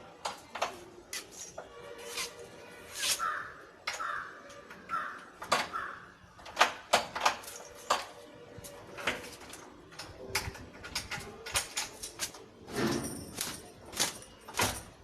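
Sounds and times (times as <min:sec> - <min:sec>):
bird calling: 0:03.2 - 0:06.2.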